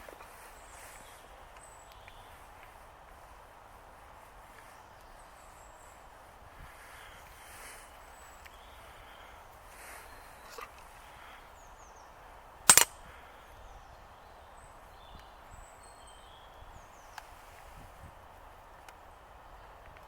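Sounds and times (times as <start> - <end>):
faint birds chirping: 0.0 - 20.0
loud sharp crack: 12.7 - 13.0.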